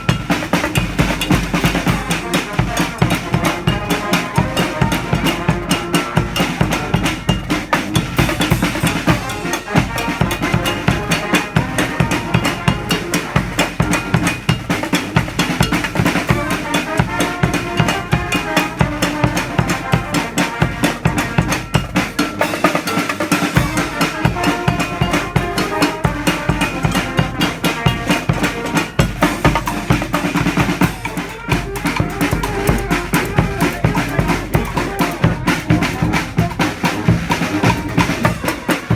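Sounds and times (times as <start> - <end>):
marching band playing: 0.0 - 38.9
snare drum: 0.0 - 38.9
bass drum: 23.6 - 38.9.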